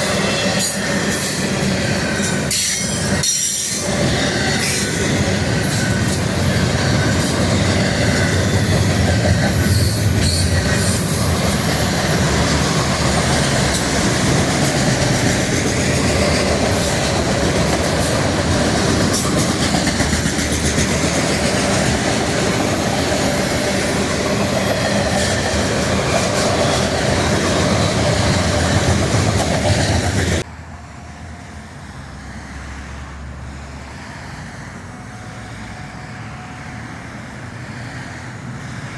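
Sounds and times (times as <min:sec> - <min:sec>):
train wheels on rails: 0:00.0 - 0:30.5.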